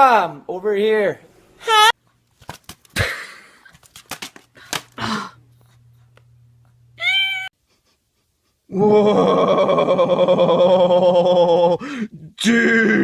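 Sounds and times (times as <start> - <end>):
high-pitched animal call: 7.0 - 7.5.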